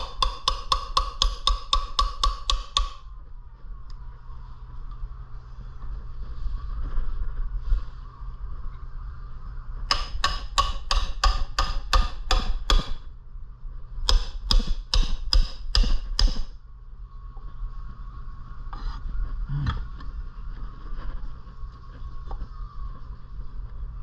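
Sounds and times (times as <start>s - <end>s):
hammer striking metal: 0.0s - 3.0s, 9.9s - 13.0s, 14.1s - 16.6s.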